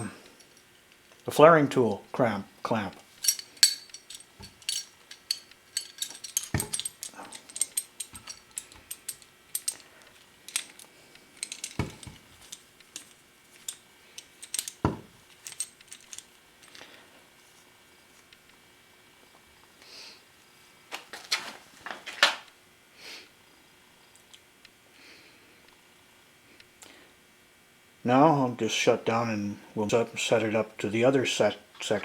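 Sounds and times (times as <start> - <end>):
small metal parts clinking: 3.2 - 16.9
heavier metal knocks: 3.3 - 7.0.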